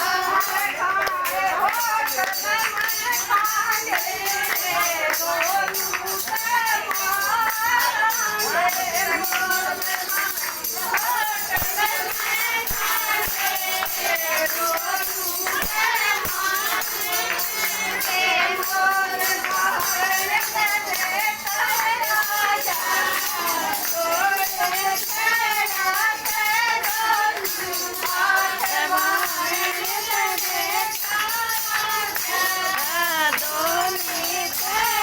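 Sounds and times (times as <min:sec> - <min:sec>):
jingling tambourine: 0:00.0 - 0:35.0.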